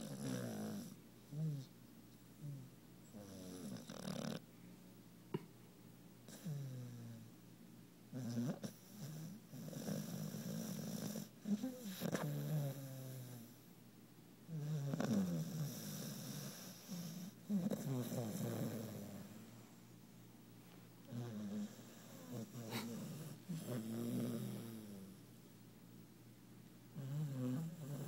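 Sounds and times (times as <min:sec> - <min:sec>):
puppy snoring: 0:00.0 - 0:01.8, 0:02.4 - 0:04.5, 0:06.3 - 0:07.3, 0:08.1 - 0:13.7, 0:14.5 - 0:19.9, 0:21.0 - 0:25.3, 0:27.0 - 0:28.0.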